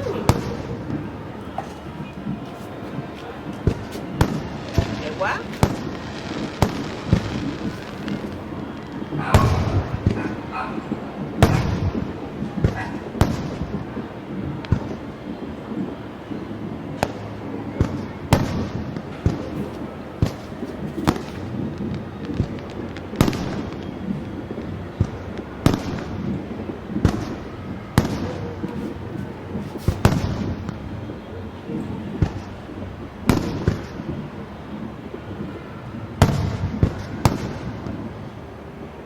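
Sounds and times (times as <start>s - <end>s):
fireworks bangs: 0.0s - 38.4s
rumble of distant fireworks: 0.0s - 39.0s.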